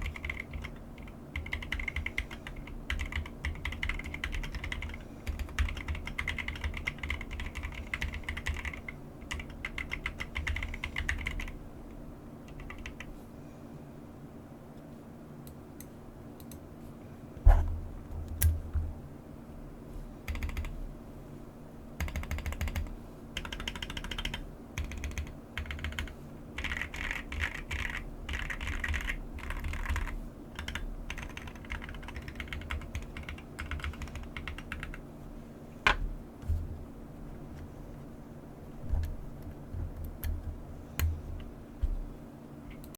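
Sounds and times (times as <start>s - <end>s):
typing on computer keyboard: 0.0s - 11.6s, 12.5s - 13.1s, 20.3s - 20.7s, 22.0s - 35.0s.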